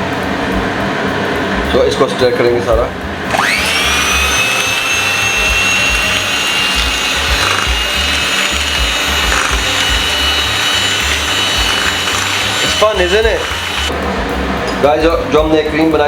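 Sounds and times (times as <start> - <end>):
electric hand mixer whining: 3.3 - 14.0.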